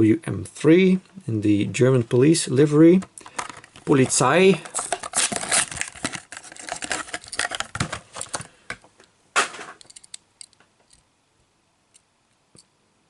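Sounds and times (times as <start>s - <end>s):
plastic packaging crackling: 3.2s - 8.6s.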